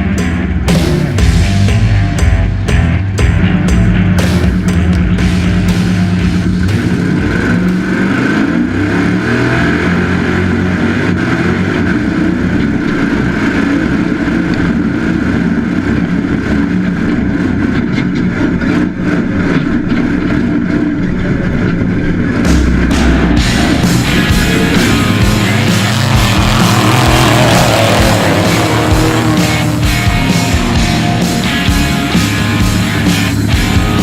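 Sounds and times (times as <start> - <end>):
road and wind noise: 0.0 - 34.0
truck engine revving: 0.0 - 34.0.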